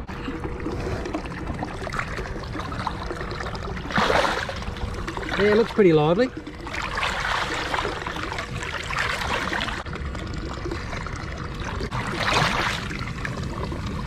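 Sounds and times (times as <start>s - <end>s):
water splashing and trickling: 0.0s - 14.0s.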